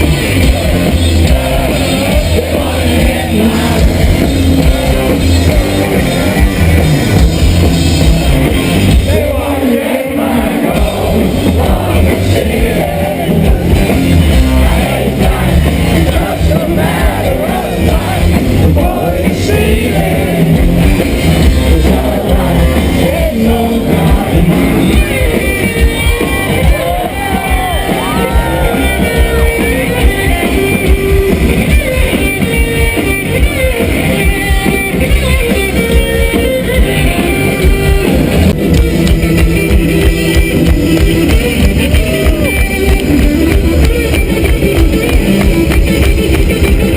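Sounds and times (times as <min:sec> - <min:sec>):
person singing: 0:00.0 - 0:06.7, 0:09.0 - 0:20.8, 0:21.5 - 0:30.5
rock band playing live: 0:00.0 - 0:46.9.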